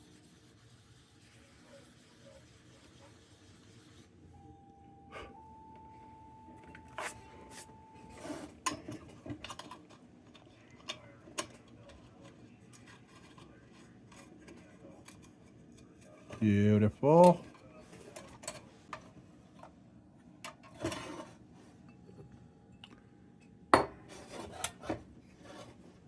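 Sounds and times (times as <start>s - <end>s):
faint steady high tone: 4.3s - 8.6s.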